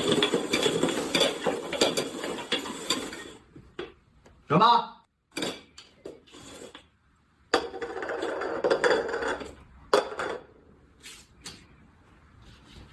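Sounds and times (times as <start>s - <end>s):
hard objects knocking: 0.0s - 4.0s, 7.5s - 10.6s
objects rattling: 0.0s - 4.0s, 7.5s - 10.6s.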